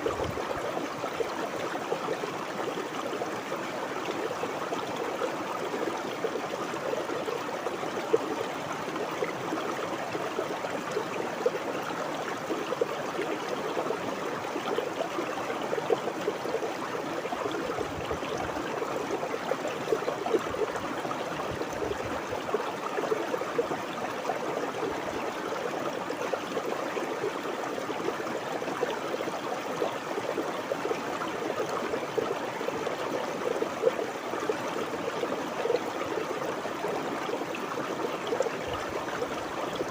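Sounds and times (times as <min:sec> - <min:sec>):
river water babbling over rocks: 0:00.0 - 0:39.9.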